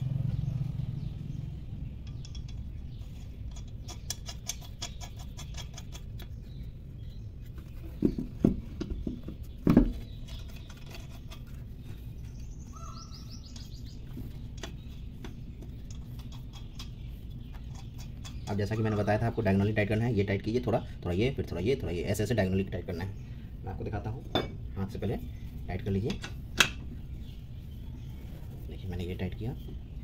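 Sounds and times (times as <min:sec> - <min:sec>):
small birds chirping: 0:00.0 - 0:30.0
bird trill: 0:12.2 - 0:19.8.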